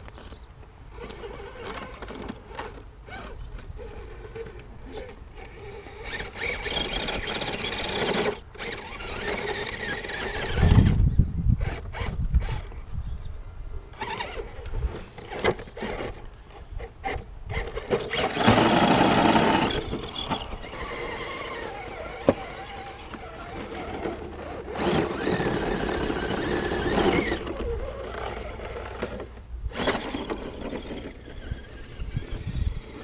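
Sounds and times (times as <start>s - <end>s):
rc car motor whining: 0.0s - 33.0s.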